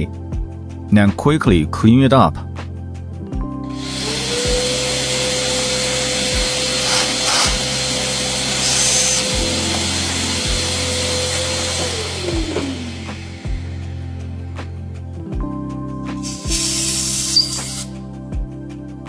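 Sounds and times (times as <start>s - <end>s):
background music with steady beat: 0.0s - 19.0s
small vacuum cleaner motor whine: 3.8s - 13.7s.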